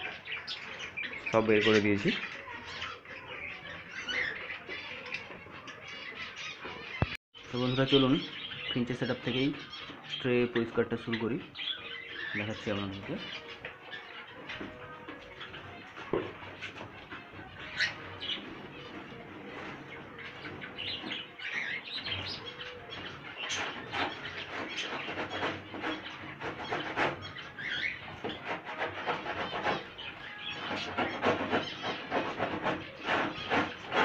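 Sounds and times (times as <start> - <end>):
small birds chirping: 0.0 - 34.0.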